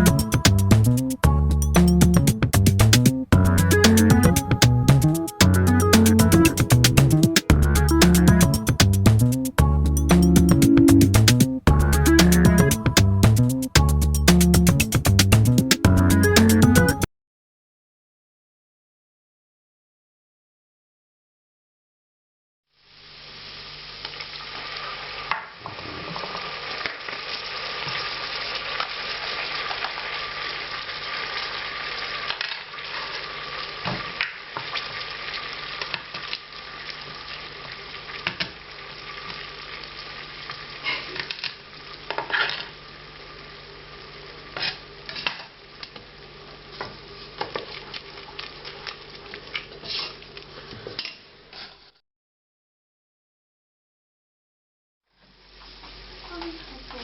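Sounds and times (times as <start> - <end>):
onions sizzling in a pan: 22.7 - 50.6, 55.2 - 57.0
utensil scraping a pan: 44.6 - 45.5, 49.8 - 50.2, 51.5 - 52.0.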